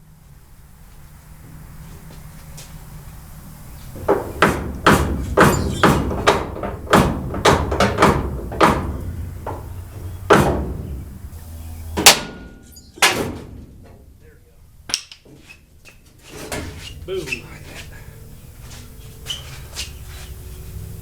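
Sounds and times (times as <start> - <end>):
hammer striking sheet metal: 4.1 - 11.3, 12.0 - 13.5.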